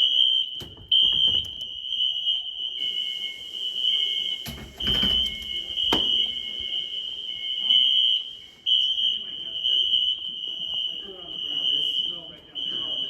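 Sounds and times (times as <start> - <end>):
high-pitched fire alarm horn: 0.0 - 13.0
lower-pitched alarm horn: 0.0 - 13.0
thumps: 0.6 - 1.7.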